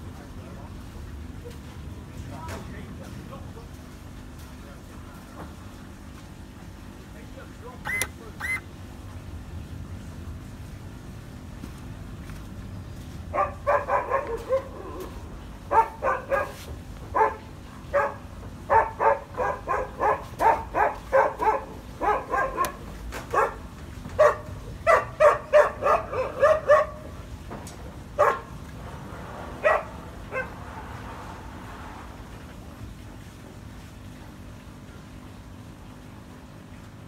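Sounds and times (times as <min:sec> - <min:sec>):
dog barking: 0:13.3 - 0:15.1, 0:15.7 - 0:23.6, 0:24.2 - 0:27.1, 0:28.2 - 0:28.5, 0:29.6 - 0:30.6.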